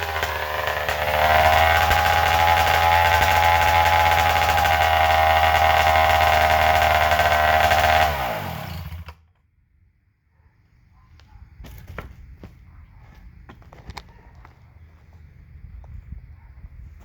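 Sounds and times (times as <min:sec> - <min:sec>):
chainsaw running: 0:00.0 - 0:09.4.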